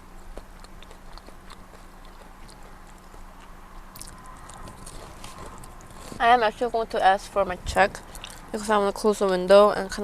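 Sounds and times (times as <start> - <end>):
person chewing food: 0.0 - 6.2, 8.0 - 8.5
steady low hum: 0.0 - 10.0.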